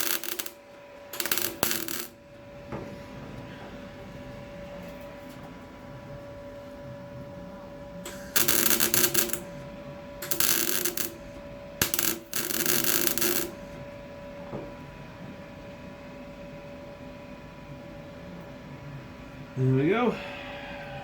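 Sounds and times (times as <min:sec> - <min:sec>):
welder arc sputtering and crackling: 0:00.0 - 0:02.2, 0:08.0 - 0:09.6, 0:10.2 - 0:13.8
steady hum: 0:00.0 - 0:21.0.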